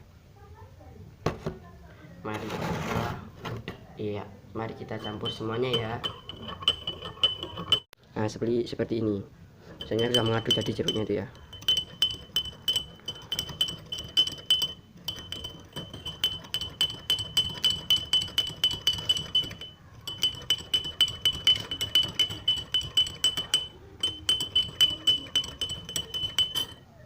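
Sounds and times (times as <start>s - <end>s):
metal spoon clinking in glass: 4.9s - 7.9s, 9.7s - 26.8s.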